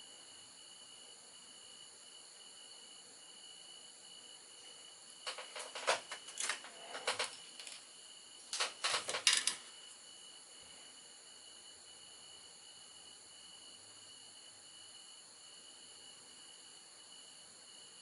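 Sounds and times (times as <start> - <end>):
model kit parts clicking and rattling: 5.2 - 7.8, 8.5 - 9.7.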